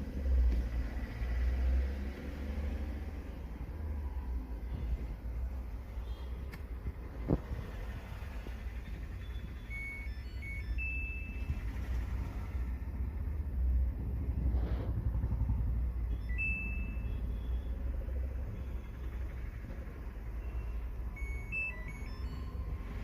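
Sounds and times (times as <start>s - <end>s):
control panel beeping: 8.8s - 11.8s, 16.1s - 17.7s, 20.4s - 22.9s
steady low rumble: 12.6s - 17.1s.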